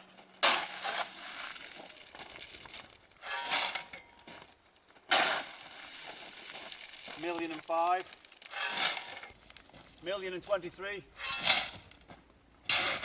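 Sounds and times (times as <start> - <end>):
shovel scraping ballast stones: 0.3 - 4.0, 5.1 - 12.0, 12.7 - 13.0.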